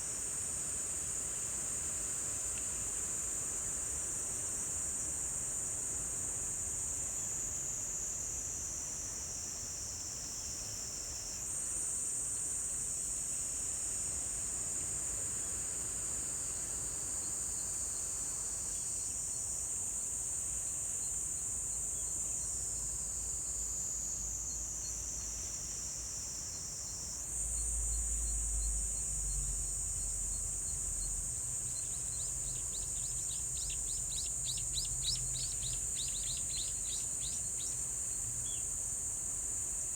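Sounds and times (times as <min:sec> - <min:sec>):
insects trilling: 0:20.7 - 0:39.9.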